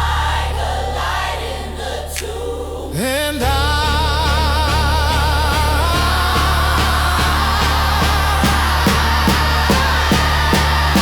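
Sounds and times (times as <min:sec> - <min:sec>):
bass line: 0:00.0 - 0:11.0
regular beat: 0:05.5 - 0:11.0.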